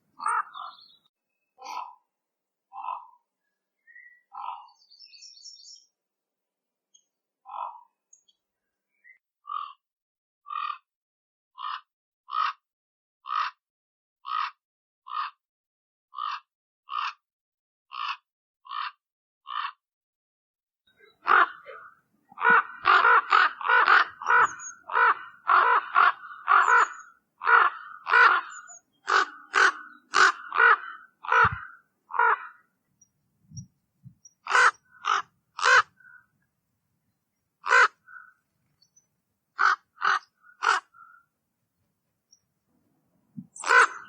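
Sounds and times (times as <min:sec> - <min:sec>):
raven cawing: 0:00.2 - 0:01.0, 0:13.3 - 0:13.6, 0:18.0 - 0:19.8, 0:21.0 - 0:32.8, 0:34.4 - 0:36.4, 0:37.6 - 0:39.0, 0:39.6 - 0:41.3, 0:43.4 - 0:44.0.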